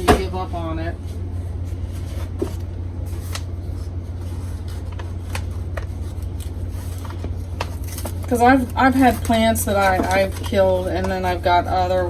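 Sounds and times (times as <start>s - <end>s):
steady low hum: 0.0s - 12.0s
packaging rustling and crackling: 1.0s - 11.8s.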